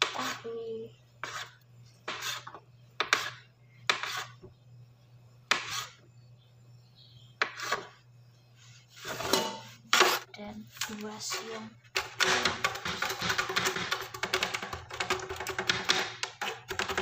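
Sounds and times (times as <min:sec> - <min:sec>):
knife chopping on cutting board: 0:02.1 - 0:04.3.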